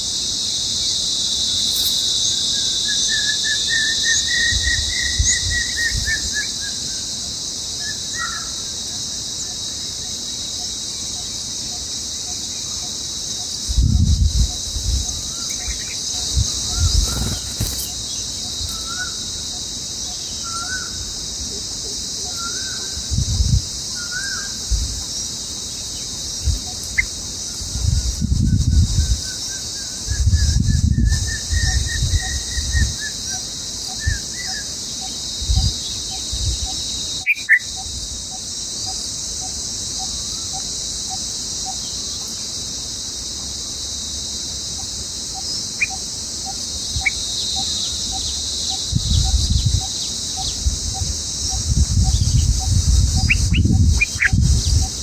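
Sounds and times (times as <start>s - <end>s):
insect chorus: 0.0s - 55.0s
wind rumble on microphone: 4.2s - 6.7s, 13.6s - 18.9s, 23.0s - 23.9s, 24.6s - 25.2s, 26.3s - 33.1s, 34.0s - 34.4s, 35.4s - 36.9s, 48.1s - 55.0s.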